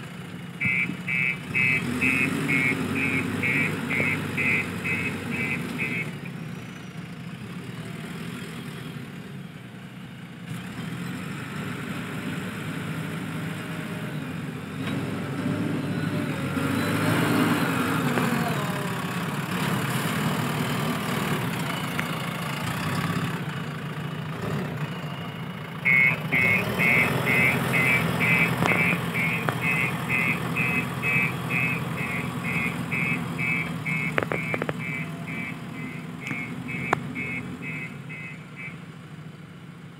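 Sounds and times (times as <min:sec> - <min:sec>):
diesel engine running: 0:00.0 - 0:07.8, 0:12.6 - 0:39.9
reversing alarm beeping: 0:00.6 - 0:06.2, 0:25.9 - 0:38.8.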